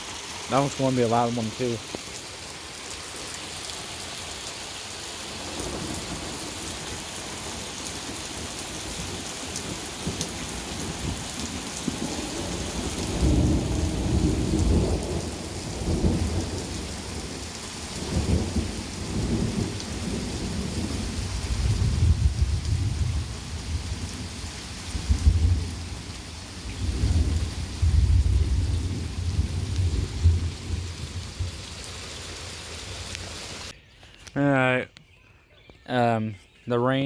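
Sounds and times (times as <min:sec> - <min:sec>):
steady rain falling: 0:00.0 - 0:33.8
deep rumble of thunder: 0:09.8 - 0:31.6.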